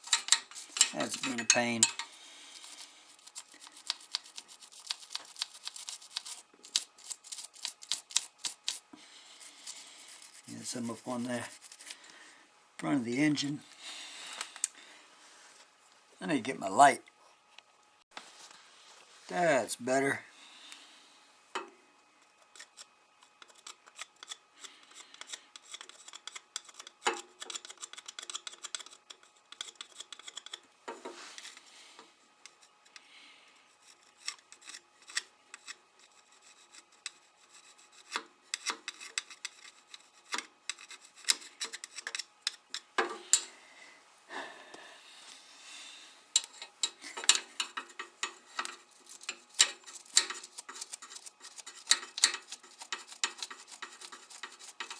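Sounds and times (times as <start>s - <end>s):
scraping and brushing metal: 0.0s - 12.0s, 46.4s - 54.9s.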